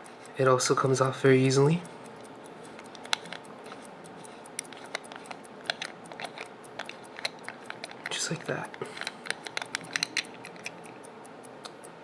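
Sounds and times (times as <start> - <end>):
pocket watch case clicks and scrapes: 4.6 - 10.9.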